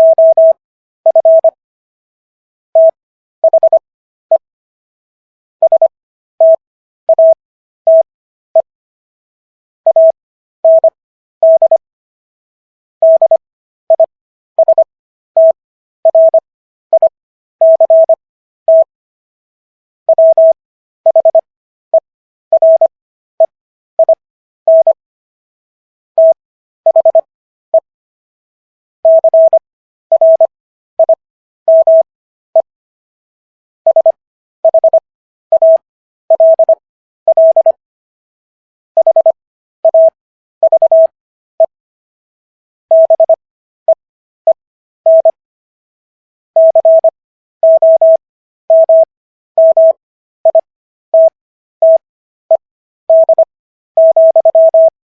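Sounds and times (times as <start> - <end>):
morse code beeping tone: 0.0 - 1.6, 2.8 - 3.8, 5.6 - 8.1, 9.9 - 11.8, 13.0 - 16.4, 17.0 - 18.9, 20.1 - 21.4, 22.6 - 25.0, 26.2 - 27.9, 29.1 - 32.7, 33.9 - 37.8, 39.0 - 41.8, 42.9 - 43.4, 45.1 - 45.4, 46.6 - 55.0.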